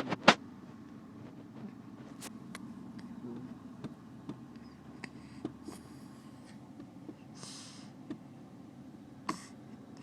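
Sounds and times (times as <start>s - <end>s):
baby snoring softly: 9.2s - 9.6s.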